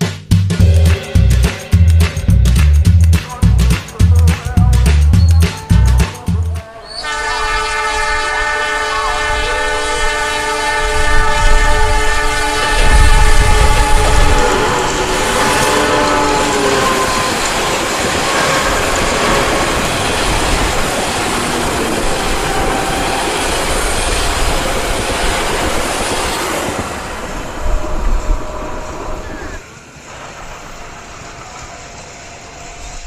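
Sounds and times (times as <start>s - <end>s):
train rumbling on rails: 0.0s - 33.0s
multi-tone train horn: 5.3s - 29.6s.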